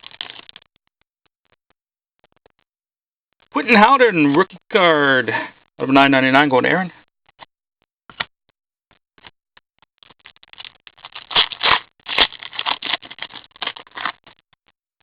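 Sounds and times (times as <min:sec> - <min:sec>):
trading cards scraping and rustling: 0:10.0 - 0:14.4.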